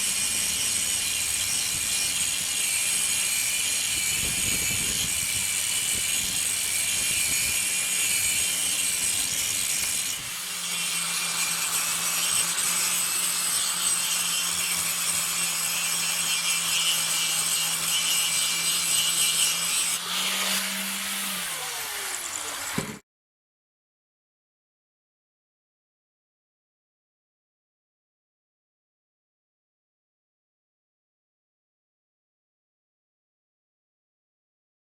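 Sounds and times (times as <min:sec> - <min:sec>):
power tool motor hum: 0:00.0 - 0:23.0.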